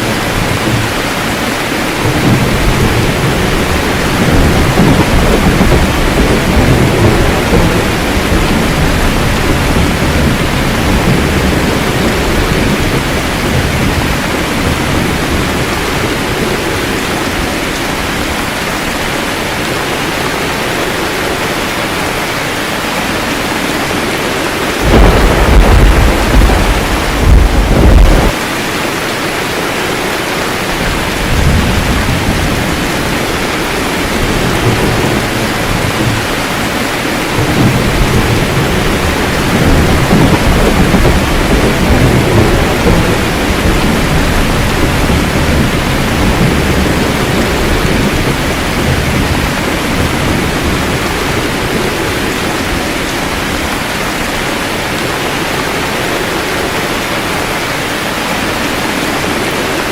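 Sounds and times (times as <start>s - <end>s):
low rolling thunder: 0.0s - 18.7s, 23.3s - 28.4s, 30.6s - 57.1s
heavy rain: 0.0s - 59.9s.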